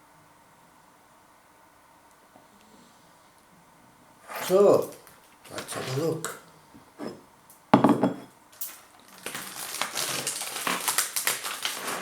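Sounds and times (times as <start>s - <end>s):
plastic packaging crackling: 8.6s - 12.0s.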